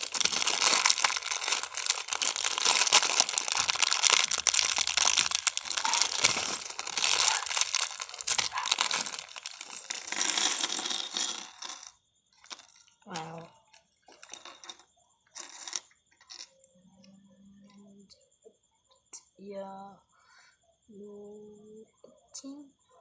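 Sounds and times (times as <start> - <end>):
plastic packaging crinkling and tearing: 0.0 - 11.3
small plastic pieces clicking: 0.0 - 14.8.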